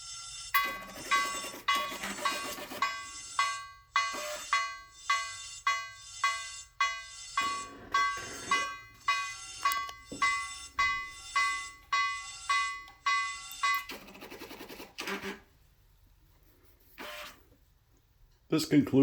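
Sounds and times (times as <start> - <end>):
bell-like alarm tone: 0.0 - 14.1.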